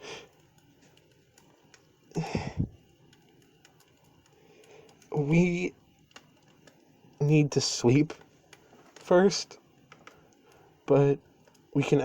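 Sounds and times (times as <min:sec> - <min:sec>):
campfire crackling: 0:00.0 - 0:12.0
breathy voice sound: 0:02.2 - 0:02.8.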